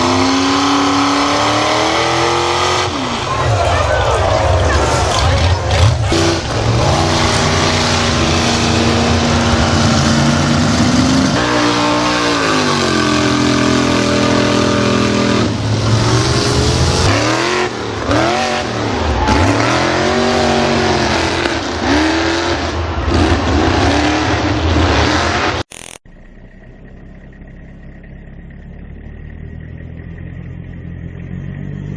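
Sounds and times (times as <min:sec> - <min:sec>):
car engine revving hard: 0:00.0 - 0:03.4, 0:04.7 - 0:25.7.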